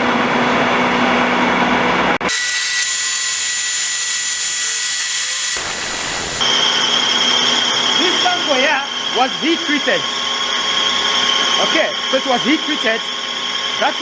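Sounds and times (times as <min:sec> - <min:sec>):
cutting tool hissing on metal: 0:02.2 - 0:06.4
high whines: 0:02.2 - 0:06.4
metal lathe running: 0:02.2 - 0:06.4.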